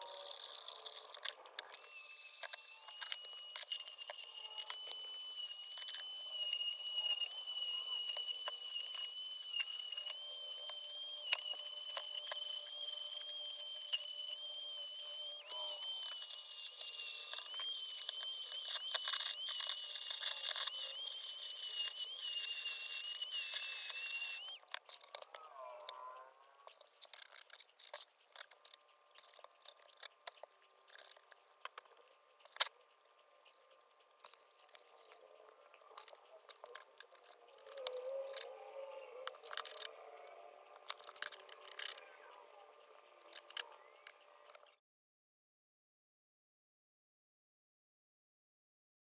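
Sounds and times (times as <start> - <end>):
power tool high-pitched whine: 0.0 - 26.8, 34.2 - 44.8.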